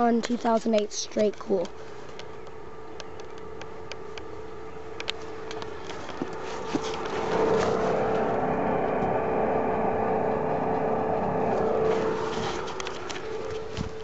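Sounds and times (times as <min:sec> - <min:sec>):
constant hum: 0:00.0 - 0:14.0
furnace exhaust rushing blow: 0:03.4 - 0:14.0.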